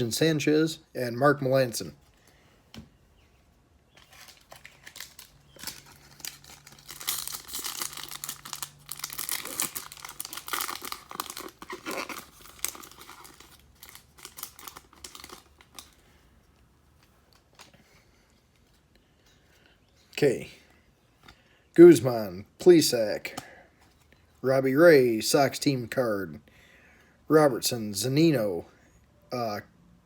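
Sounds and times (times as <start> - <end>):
foil wrapper tearing and crinkling: 4.0 - 16.0.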